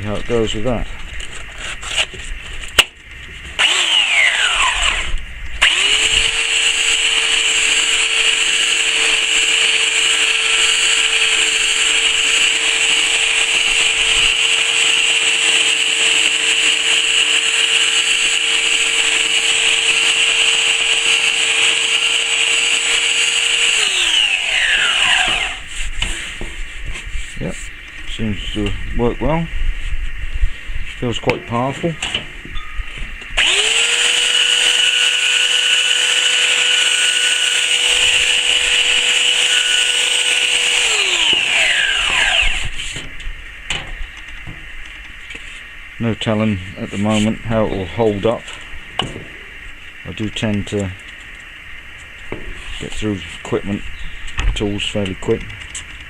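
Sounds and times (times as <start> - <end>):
belt sander whining: 3.6 - 25.7, 33.4 - 43.1.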